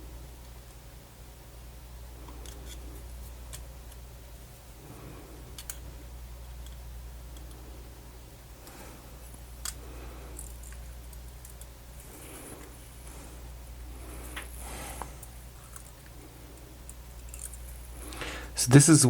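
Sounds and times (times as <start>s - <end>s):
steady low hum: 0.0s - 19.0s
small parts clicking and tapping: 2.2s - 4.0s, 5.5s - 5.8s, 6.5s - 7.6s, 9.6s - 12.7s, 15.1s - 18.2s.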